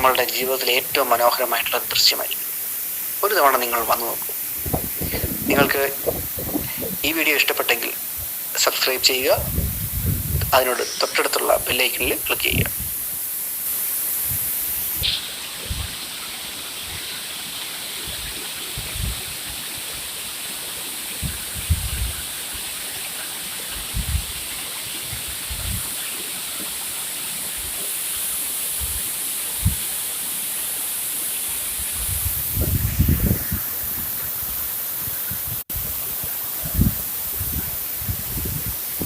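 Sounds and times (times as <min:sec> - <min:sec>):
waterfall rushing: 0:00.0 - 0:09.6, 0:10.5 - 0:12.7.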